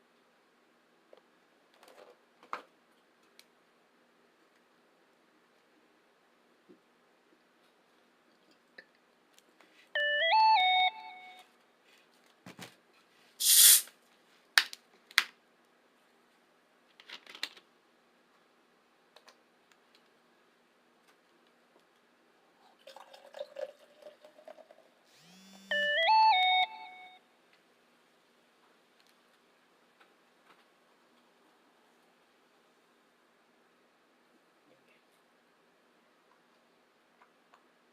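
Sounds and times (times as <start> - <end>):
electronic jingle: 10.0 - 11.4, 25.3 - 27.2.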